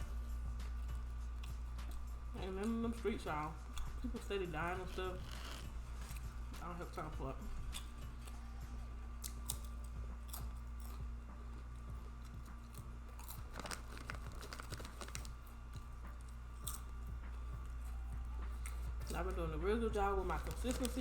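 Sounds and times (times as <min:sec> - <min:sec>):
steady low hum: 0:00.0 - 0:21.0
person chewing with mouth clicks: 0:07.6 - 0:19.2.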